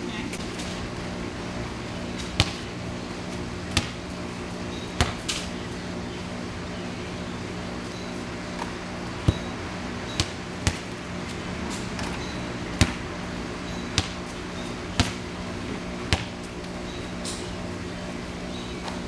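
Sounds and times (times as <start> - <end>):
steady low hum: 0.0 - 19.0
basketball bouncing on hard surface: 2.2 - 2.7, 3.7 - 4.0, 5.0 - 5.4, 8.6 - 9.5, 10.1 - 11.0, 12.0 - 13.0, 13.8 - 14.3, 15.0 - 15.2, 16.1 - 16.5.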